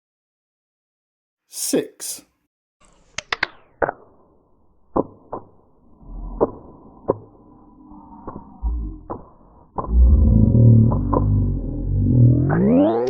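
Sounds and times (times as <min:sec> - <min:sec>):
slowed deep clicks: 0:04.9 - 0:13.0
faint low rumble: 0:09.8 - 0:12.8.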